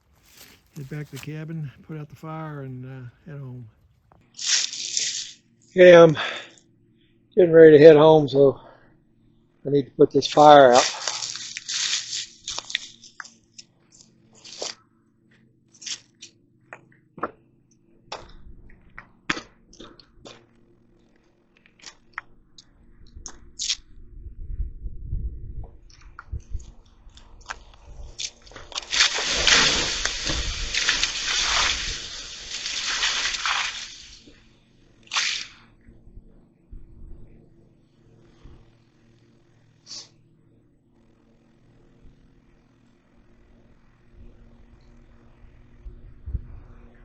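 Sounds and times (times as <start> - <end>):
steam hissing from coals: 28.6 - 34.5, 39.8 - 40.1.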